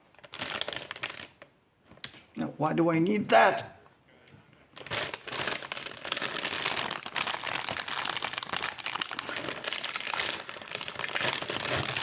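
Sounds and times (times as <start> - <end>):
plastic packaging crinkling: 0.1 - 2.2, 4.7 - 12.0.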